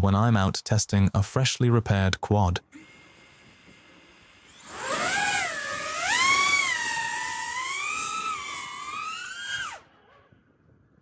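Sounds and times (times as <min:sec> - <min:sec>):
drone propellers whining: 0:02.8 - 0:09.9.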